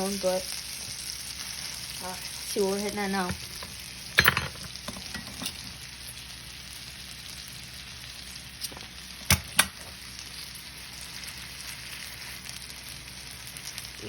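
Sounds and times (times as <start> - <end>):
steak sizzling in a pan: 0.0 - 14.0.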